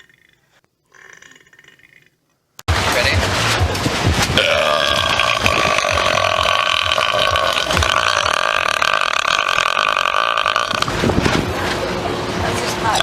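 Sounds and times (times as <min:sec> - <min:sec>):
man belching: 0:04.4 - 0:10.9.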